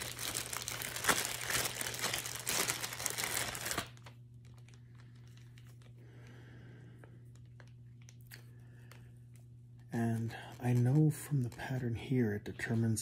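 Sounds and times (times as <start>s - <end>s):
crinkling rustling handling noise: 0.0s - 6.2s, 8.9s - 13.0s
low steady hum: 0.0s - 13.0s.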